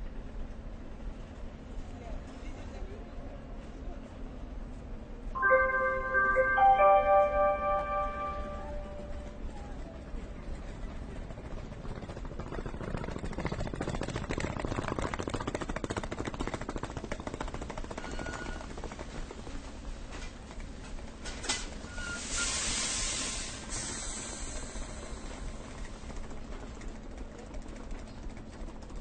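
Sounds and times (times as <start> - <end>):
train rumble and clatter: 0.0 - 5.3, 6.6 - 29.0
burst of hiss: 22.2 - 24.8.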